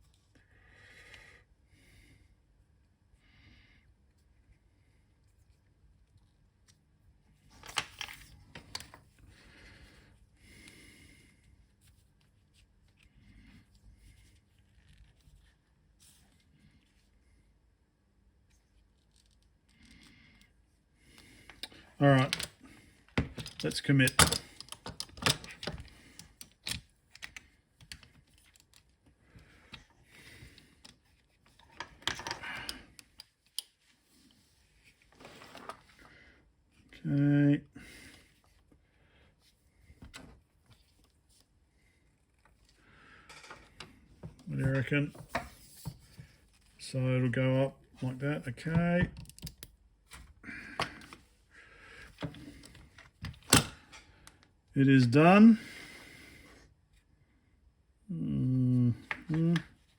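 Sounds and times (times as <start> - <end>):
light clicks of small parts: 30.5 - 33.8.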